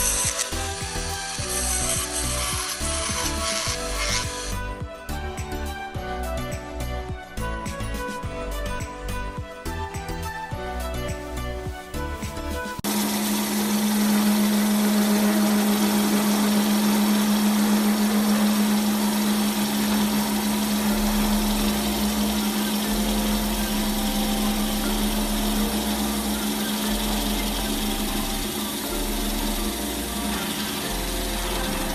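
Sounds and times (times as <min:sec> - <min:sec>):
wood lathe motor hum: 0:00.0 - 0:04.8, 0:12.8 - 0:31.9.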